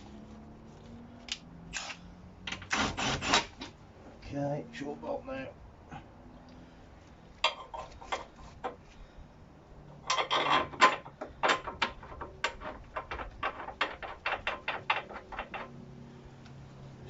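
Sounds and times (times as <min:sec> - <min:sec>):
metal tools rattling: 0:10.0 - 0:15.8.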